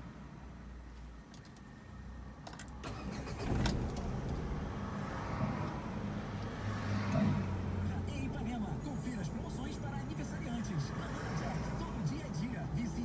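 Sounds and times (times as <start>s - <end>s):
car engine starting and idling: 1.3s - 13.0s.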